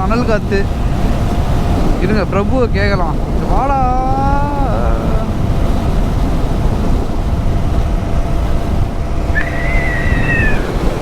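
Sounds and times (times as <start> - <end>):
motorcycle road noise: 0.0 - 11.0
wind buffeting microphone: 0.0 - 11.0
high whistle-like tone: 9.4 - 11.0.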